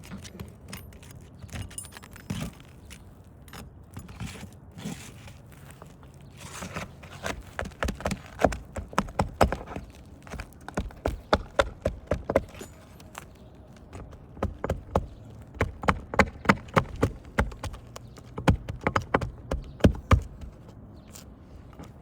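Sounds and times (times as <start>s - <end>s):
hand tools tapping roof shingles: 6.4s - 21.2s.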